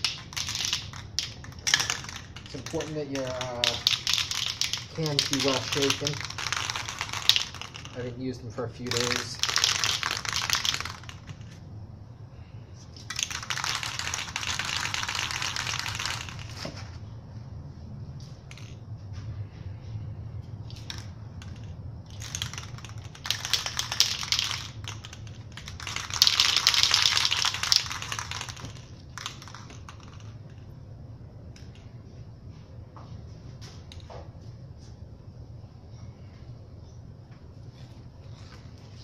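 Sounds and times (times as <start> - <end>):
spray paint can hissing: 0.0 - 8.1, 8.9 - 11.4, 22.1 - 29.9.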